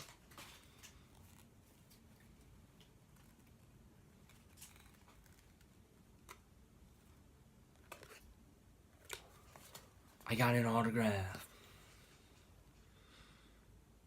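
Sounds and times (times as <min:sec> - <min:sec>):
trading cards being flipped: 0:04.2 - 0:06.4.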